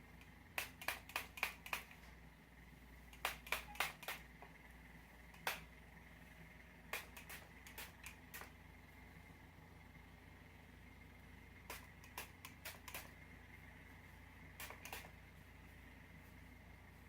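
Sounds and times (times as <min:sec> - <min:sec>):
hairspray spritzes: 0:03.2 - 0:04.3, 0:07.0 - 0:08.5, 0:11.7 - 0:13.1, 0:14.6 - 0:15.1.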